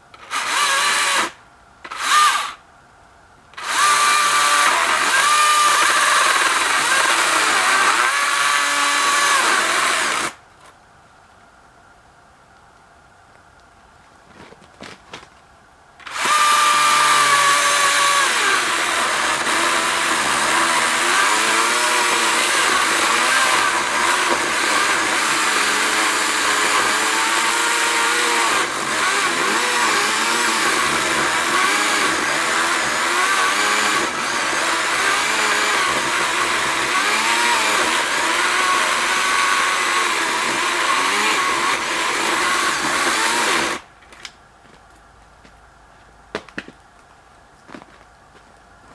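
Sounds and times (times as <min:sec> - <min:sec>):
electric chainsaw sawing wood: 0:00.2 - 0:02.6, 0:03.6 - 0:10.4, 0:16.0 - 0:43.9.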